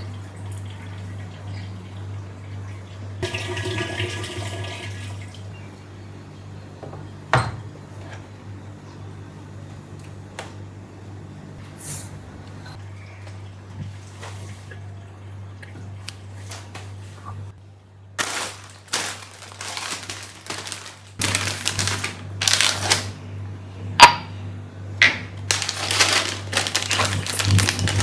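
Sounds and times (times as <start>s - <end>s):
steady low hum: 0.0s - 18.2s, 21.2s - 28.0s
rustling and clattering: 25.4s - 28.0s.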